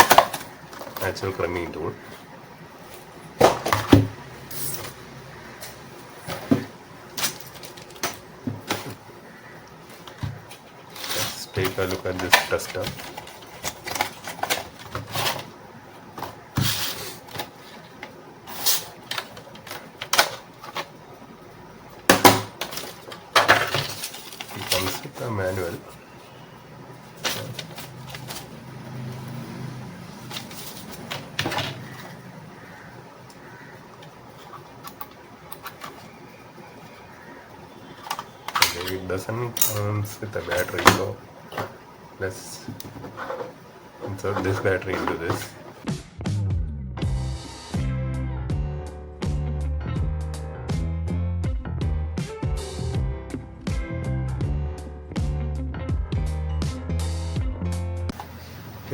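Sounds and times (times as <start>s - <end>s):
tool parts knocking and clicking: 0.0s - 1.2s, 3.4s - 5.0s, 5.6s - 9.0s, 10.0s - 15.6s, 16.2s - 21.0s, 22.1s - 25.2s, 27.2s - 28.6s, 30.2s - 32.2s, 34.0s - 36.1s, 37.9s - 41.8s, 42.6s - 45.8s
paper rustling: 9.9s - 15.6s, 22.6s - 26.0s, 27.2s - 28.6s, 30.1s - 33.7s, 37.2s - 45.8s.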